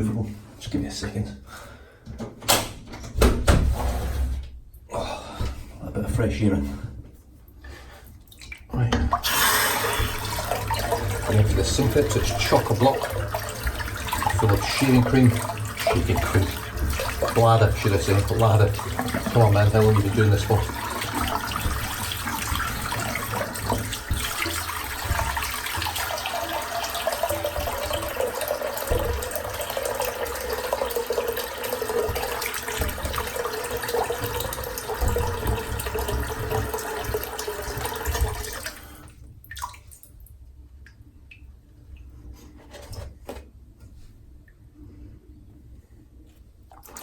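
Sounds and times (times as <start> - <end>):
water drips: 8.2 - 9.3, 9.9 - 42.1
tap water running into sink: 8.9 - 39.8.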